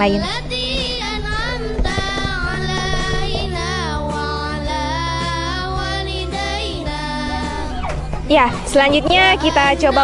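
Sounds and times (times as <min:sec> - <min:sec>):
high voice singing with vibrato: 0:00.0 - 0:07.9
steady musical accompaniment: 0:00.0 - 0:10.0.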